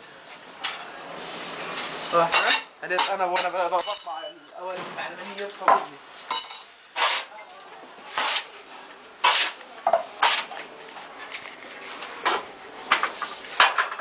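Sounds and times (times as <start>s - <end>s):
metal tool scraping: 7.0s - 7.3s, 8.2s - 8.5s, 9.2s - 9.6s, 10.2s - 10.5s.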